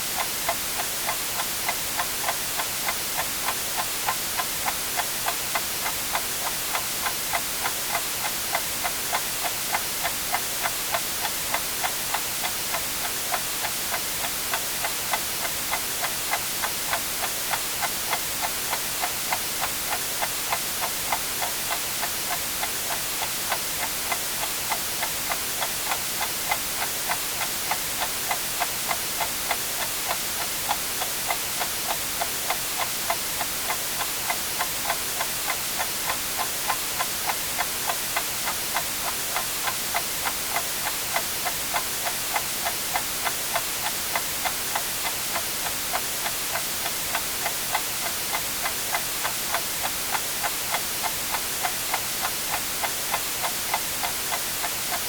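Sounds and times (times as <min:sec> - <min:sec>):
white noise hiss: 0:00.0 - 0:55.0
clock ticking: 0:00.2 - 0:55.0.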